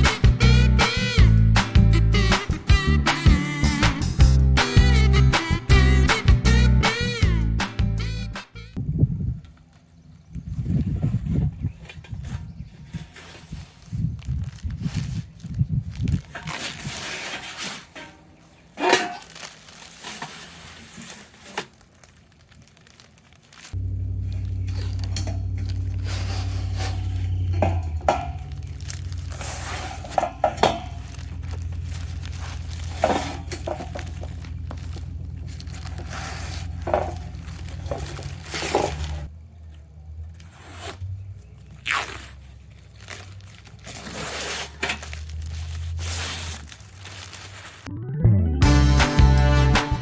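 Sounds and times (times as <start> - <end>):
background music with bass notes: 0.0 - 8.8, 47.9 - 50.0
plastic wrap crinkling and tearing: 13.1 - 39.3, 40.3 - 47.9
steel panels clanking and scraping: 16.3 - 19.3, 23.9 - 39.3.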